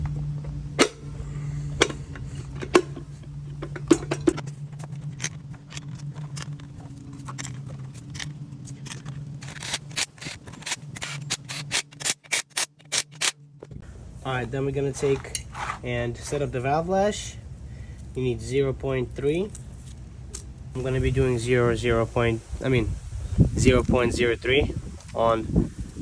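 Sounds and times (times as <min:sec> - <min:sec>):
steady low hum: 0:00.0 - 0:26.0
metal tools clinking: 0:01.8 - 0:13.3.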